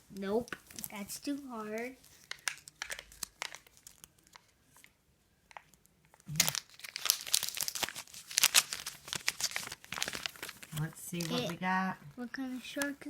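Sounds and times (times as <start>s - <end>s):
toy packaging crinkling and tearing: 0.4s - 11.6s.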